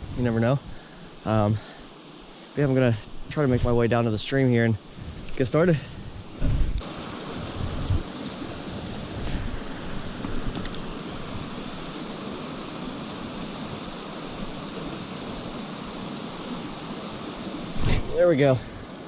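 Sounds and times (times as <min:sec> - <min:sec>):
stream rushing water: 0:00.8 - 0:19.0.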